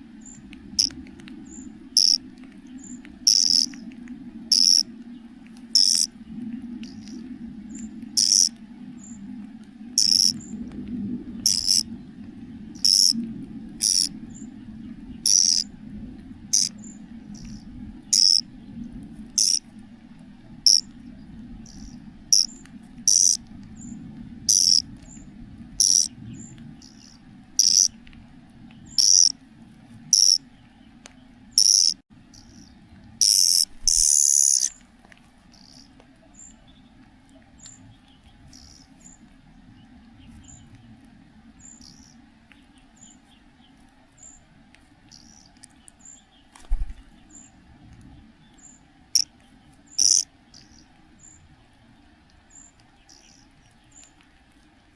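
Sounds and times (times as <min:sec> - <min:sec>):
faint chirps: 0:00.2 - 0:03.8, 0:04.5 - 0:04.9, 0:05.7 - 0:09.3, 0:10.0 - 0:10.6, 0:11.4 - 0:12.0, 0:12.6 - 0:13.2, 0:13.8 - 0:14.5, 0:15.2 - 0:15.7, 0:16.5 - 0:18.8, 0:19.4 - 0:19.7, 0:20.6 - 0:25.2, 0:25.8 - 0:28.0, 0:28.8 - 0:29.4, 0:30.1 - 0:30.4, 0:31.6 - 0:34.8, 0:35.5 - 0:36.6, 0:37.6 - 0:39.3, 0:41.6 - 0:42.2, 0:45.1 - 0:46.2, 0:48.6 - 0:51.4, 0:52.5 - 0:54.1
young cuckoo begging calls: 0:02.0 - 0:02.2, 0:03.3 - 0:03.8, 0:04.5 - 0:04.8, 0:05.8 - 0:06.1, 0:08.2 - 0:08.5, 0:10.0 - 0:10.4, 0:11.5 - 0:11.8, 0:12.8 - 0:13.2, 0:13.8 - 0:14.1, 0:15.3 - 0:15.6, 0:16.5 - 0:16.8, 0:17.4 - 0:18.4, 0:19.4 - 0:19.6, 0:20.6 - 0:20.9, 0:21.7 - 0:23.4, 0:24.5 - 0:24.8, 0:25.8 - 0:26.1, 0:26.8 - 0:27.9, 0:29.0 - 0:29.3, 0:30.1 - 0:30.4, 0:31.6 - 0:34.8, 0:50.0 - 0:50.8.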